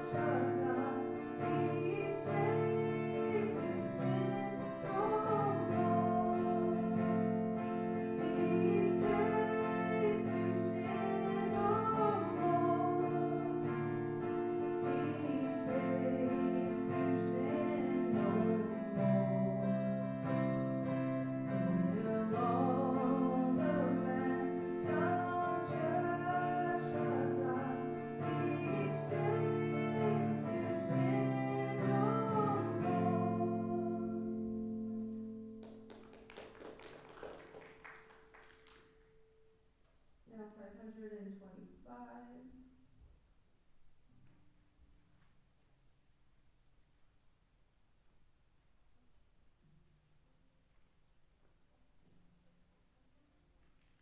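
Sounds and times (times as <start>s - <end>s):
person singing: 0.0s - 20.0s, 21.4s - 35.0s.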